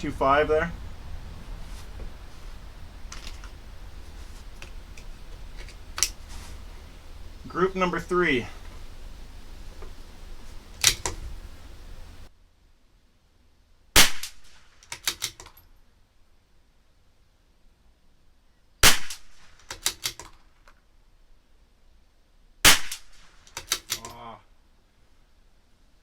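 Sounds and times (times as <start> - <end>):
metallic clicks of rifle bolt: 3.1 - 3.6, 4.6 - 6.2, 10.8 - 11.2, 14.8 - 15.7, 19.6 - 20.8, 22.9 - 24.3
rifle shots: 14.0 - 15.4, 18.8 - 20.2, 22.6 - 24.0.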